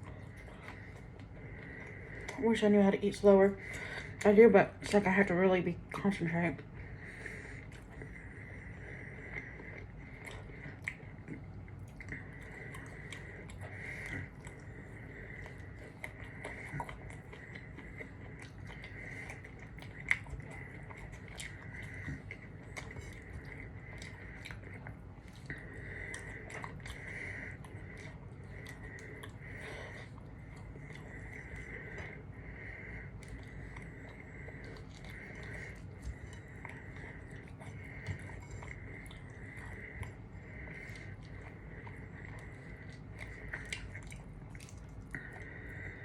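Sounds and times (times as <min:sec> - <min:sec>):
person chewing food: 0:00.0 - 0:46.0
wet mouth clicks: 0:09.3 - 0:14.7.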